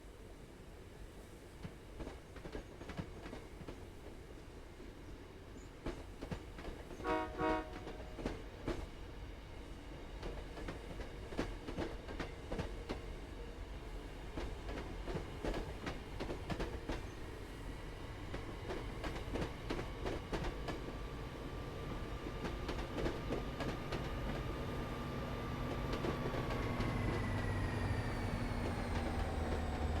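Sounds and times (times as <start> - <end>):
train wheels clacking on rail joints: 14.3 - 17.2, 22.2 - 24.5.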